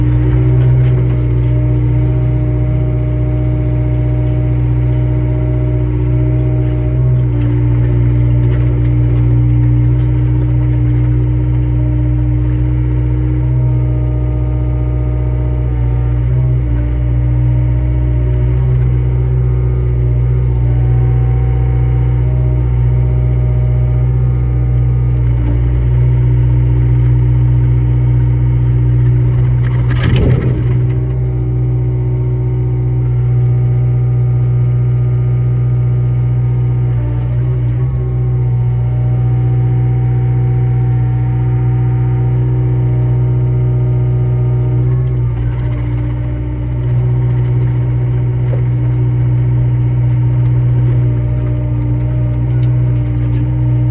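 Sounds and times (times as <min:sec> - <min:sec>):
excavator diesel engine running: 0:00.0 - 0:53.9.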